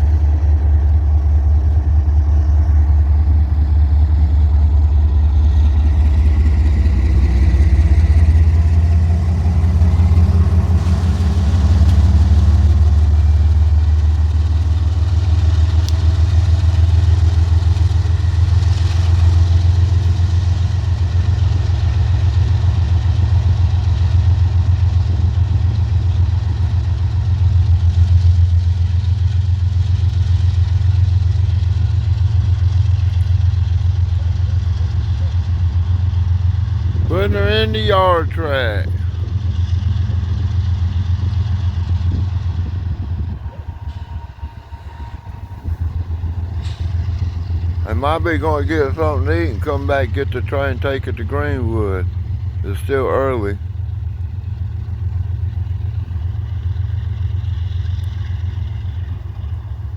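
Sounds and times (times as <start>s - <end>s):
diesel locomotive engine rumbling: 0.0s - 59.9s.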